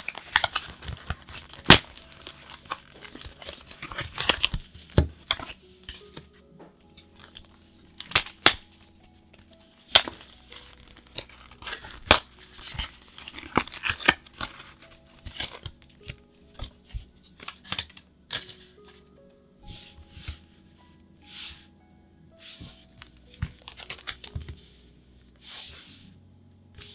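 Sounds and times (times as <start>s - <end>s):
plastic wrap and cardboard tearing: 0.0s - 6.2s, 7.1s - 19.0s, 22.7s - 24.6s
soft background music: 0.0s - 26.9s.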